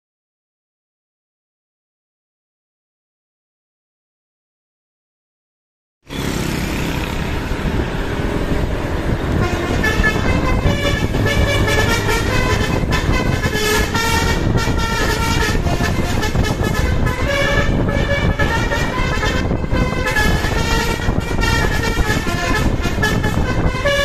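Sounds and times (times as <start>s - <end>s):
street noise: 6.0s - 24.0s
bus engine rumble: 6.1s - 24.0s
multi-tone bus horn tune: 8.3s - 24.0s.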